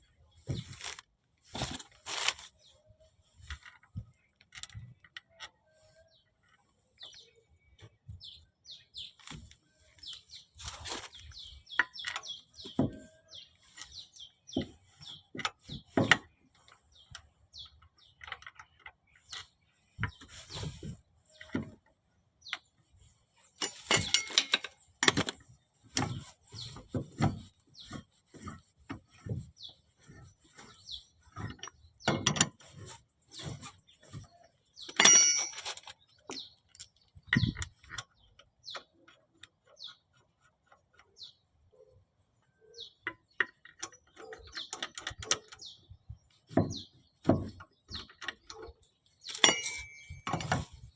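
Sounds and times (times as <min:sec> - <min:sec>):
hand tools clinking on metal: 0:23.6 - 0:25.3, 0:34.8 - 0:36.9, 0:49.2 - 0:50.8.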